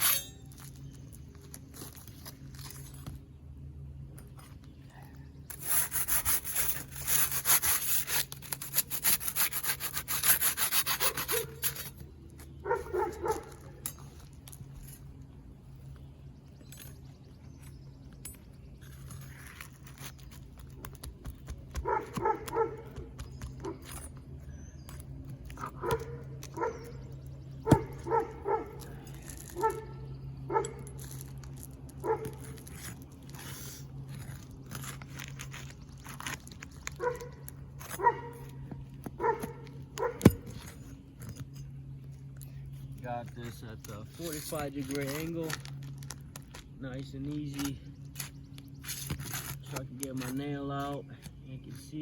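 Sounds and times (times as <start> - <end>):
steady low hum: 0.0 - 52.0
dog barking: 12.6 - 13.6, 21.8 - 23.9, 25.8 - 26.9, 27.6 - 28.8, 29.6 - 30.8, 32.0 - 32.4, 37.0 - 37.4, 38.0 - 38.4, 39.2 - 40.5.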